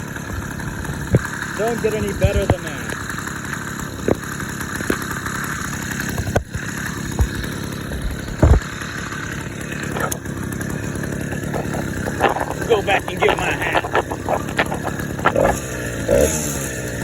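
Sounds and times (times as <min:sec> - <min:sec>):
motorized bicycle engine running: 0:00.0 - 0:17.0
short thumps: 0:08.3 - 0:08.7.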